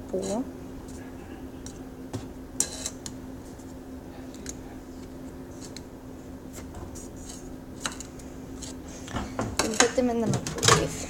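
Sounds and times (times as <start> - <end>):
steady low hum: 0.0 - 11.0
marshmallows clicking and rustling: 6.6 - 11.0.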